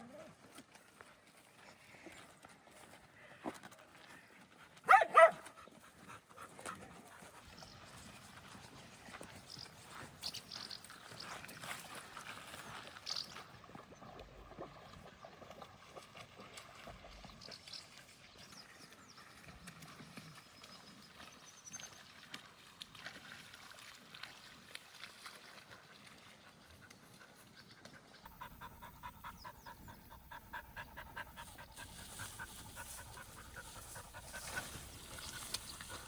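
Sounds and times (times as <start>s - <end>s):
faint rural background: 0.0s - 14.5s, 26.5s - 36.0s
dog barking: 4.8s - 5.5s.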